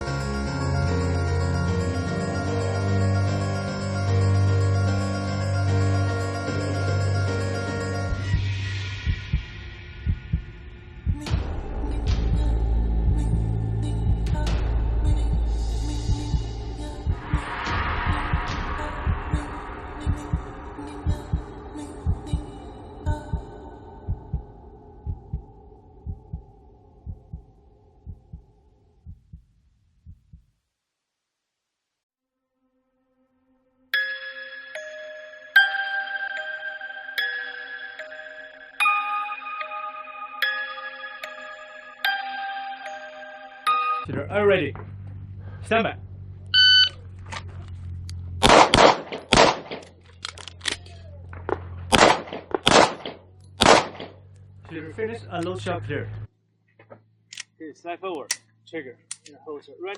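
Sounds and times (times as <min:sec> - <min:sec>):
droning tone: 0:00.3 - 0:27.8, 0:35.6 - 0:48.4
heartbeat low thumps: 0:08.1 - 0:30.5
shot timer beep: 0:46.6 - 0:47.0
pistol shots: 0:48.4 - 0:50.0, 0:51.3 - 0:54.2.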